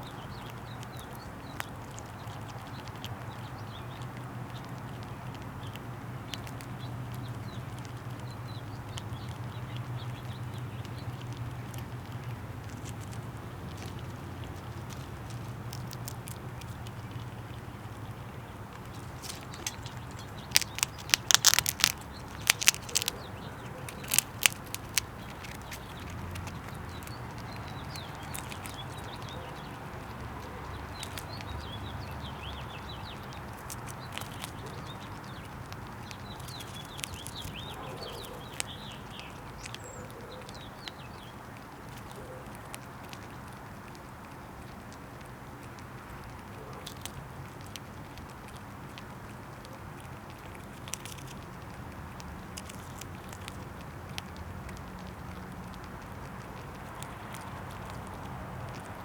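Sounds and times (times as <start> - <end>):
squirrel clicking and knocking: 0.1 - 59.0.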